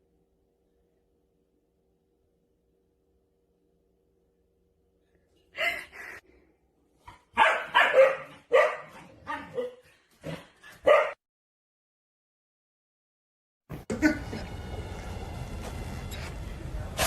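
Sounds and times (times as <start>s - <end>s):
dog barking: 7.1s - 11.2s.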